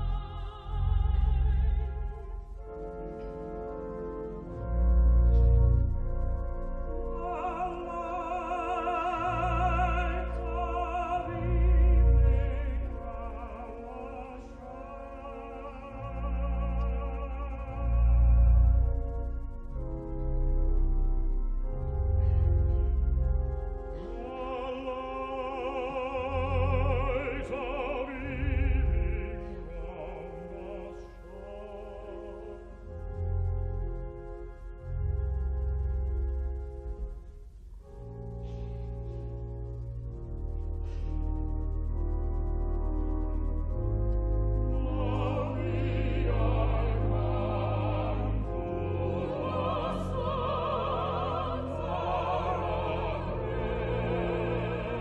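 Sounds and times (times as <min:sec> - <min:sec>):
deep bass accompaniment: 0:00.0 - 0:55.0
sustained organ chords: 0:00.0 - 0:55.0
choir singing: 0:07.1 - 0:18.6, 0:24.2 - 0:32.6, 0:44.7 - 0:55.0.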